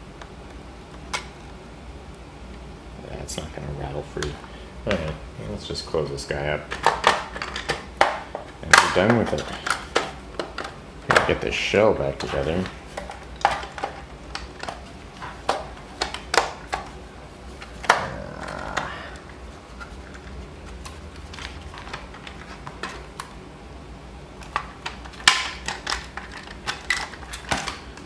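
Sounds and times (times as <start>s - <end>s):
plastic parts clicking and clattering: 6.0s - 23.4s, 24.4s - 28.0s.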